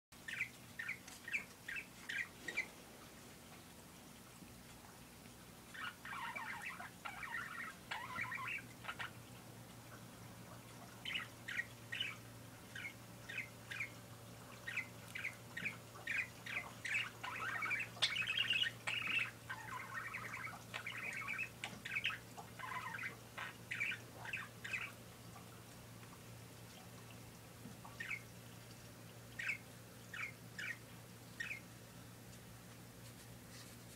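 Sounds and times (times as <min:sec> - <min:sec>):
parakeet chattering: 0:00.3 - 0:02.7, 0:05.7 - 0:09.2, 0:11.0 - 0:14.0, 0:14.6 - 0:25.0, 0:27.9 - 0:28.3, 0:29.4 - 0:30.8, 0:31.4 - 0:31.7.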